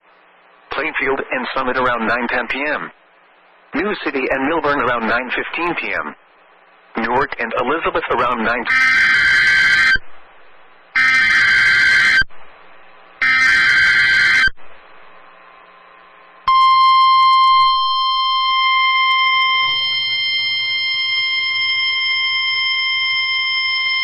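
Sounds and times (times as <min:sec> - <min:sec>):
buzzing data noise: 0:07.1 - 0:10.2, 0:10.8 - 0:24.0
steady warning alarm tone: 0:08.2 - 0:10.0, 0:11.0 - 0:12.3, 0:13.2 - 0:14.6, 0:16.5 - 0:24.0.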